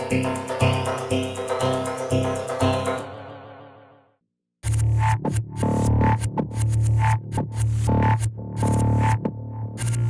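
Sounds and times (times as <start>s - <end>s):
stuttering dubstep-like synth rhythm: 4.6s - 10.0s.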